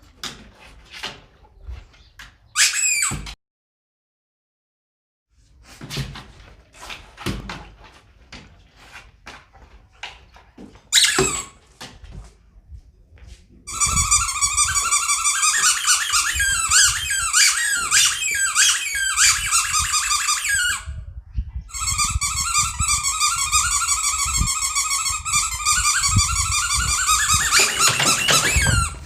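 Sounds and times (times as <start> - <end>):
toy ball squealing: 2.6 - 3.3, 10.9 - 11.6, 13.7 - 20.9, 21.7 - 29.0.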